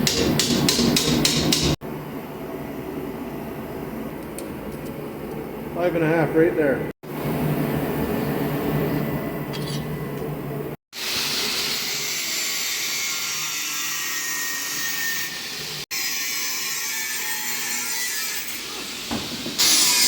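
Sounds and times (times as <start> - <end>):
angle grinder cutting steel: 11.0 - 20.0.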